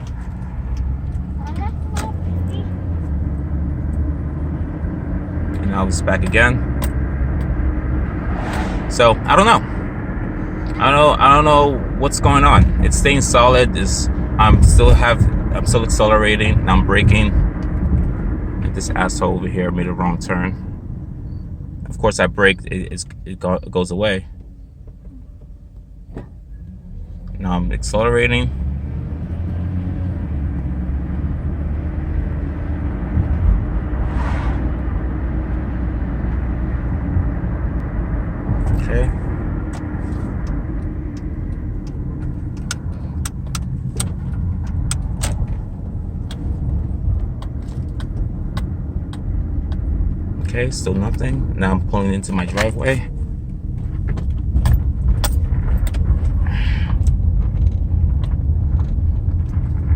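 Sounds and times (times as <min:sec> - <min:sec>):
passing vehicle whoosh: 0:00.0 - 0:15.6, 0:28.6 - 0:50.6
car engine and road noise: 0:00.0 - 0:59.9
sharp clicks and rattles: 0:36.2 - 0:59.9.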